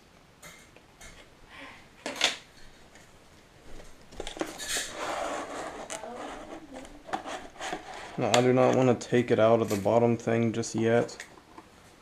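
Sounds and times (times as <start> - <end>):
plastic packaging rustling and scraping: 3.7 - 9.0.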